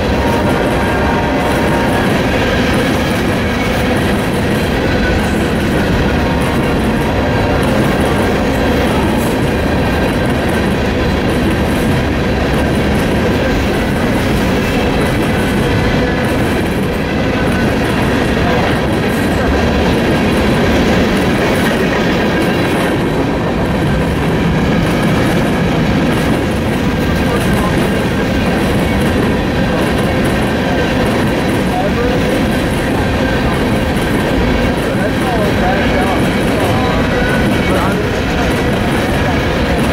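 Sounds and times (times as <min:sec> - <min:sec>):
freight train wheels clattering: 0:00.0 - 0:39.9.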